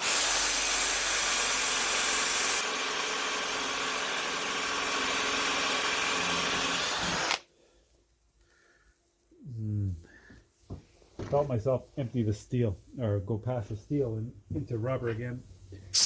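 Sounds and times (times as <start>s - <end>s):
power drill drilling: 0.0s - 7.4s.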